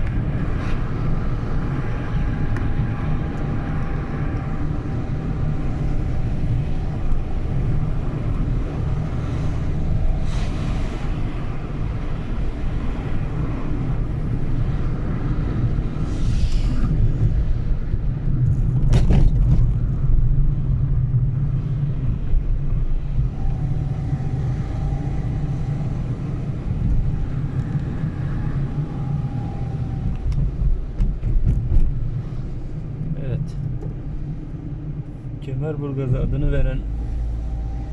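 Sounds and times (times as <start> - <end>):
car driving rumble: 0.0 - 37.9.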